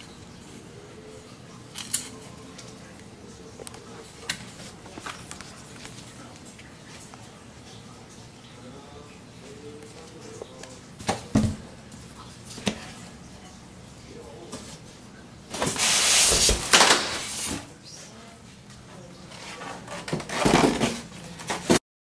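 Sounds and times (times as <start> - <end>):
loud rustling scrape: 15.6 - 17.6.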